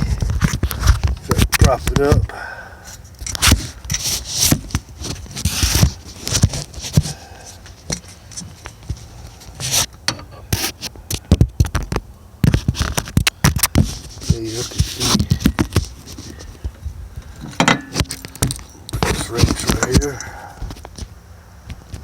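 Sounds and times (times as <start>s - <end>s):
microphone handling clicks and knocks: 0.0s - 2.3s, 3.0s - 22.0s
short scraping rubs: 13.8s - 16.7s.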